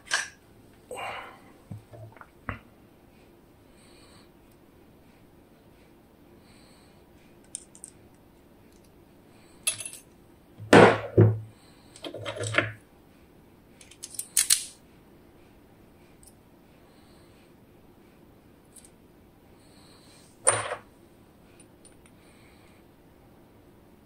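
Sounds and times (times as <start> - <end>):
metal parts clattering: 0.0 - 0.4, 9.7 - 10.1, 12.0 - 12.7, 13.8 - 14.7, 20.4 - 20.8
small metal parts clicking: 7.4 - 8.0, 9.6 - 10.1, 13.8 - 14.8.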